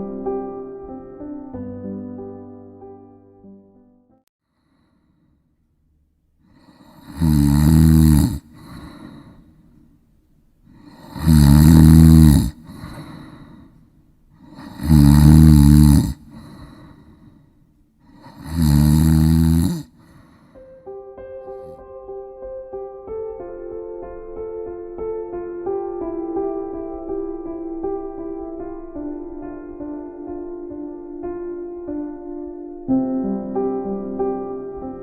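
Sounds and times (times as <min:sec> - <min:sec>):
quiet breath: 0:04.4 - 0:05.7, 0:06.4 - 0:20.8
person snoring: 0:06.5 - 0:09.6, 0:10.7 - 0:13.8, 0:14.4 - 0:17.4, 0:18.0 - 0:20.7.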